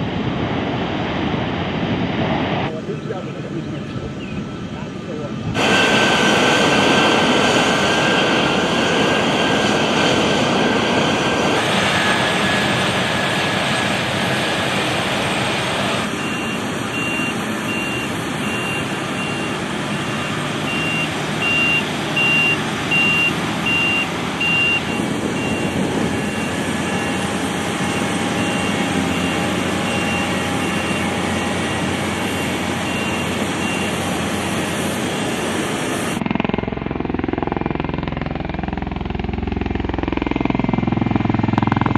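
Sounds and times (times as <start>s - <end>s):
jet engine noise: 0.0s - 41.9s
backup alarm beeping: 16.1s - 34.6s.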